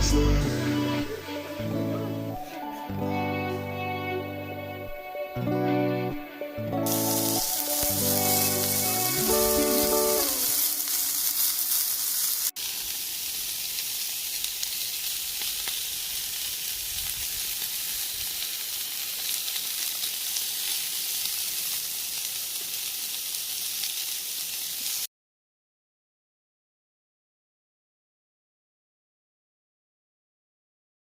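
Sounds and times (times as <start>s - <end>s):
food sizzling: 6.6s - 25.1s.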